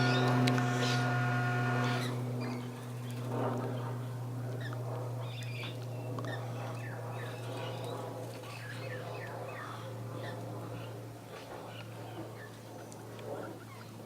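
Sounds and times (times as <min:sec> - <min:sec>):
birds chirping: 0:00.0 - 0:11.0
steady low hum: 0:00.0 - 0:14.0.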